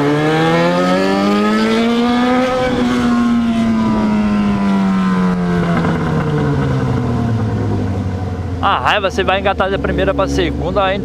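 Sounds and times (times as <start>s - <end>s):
motorcycle engine revving: 0.0s - 11.0s.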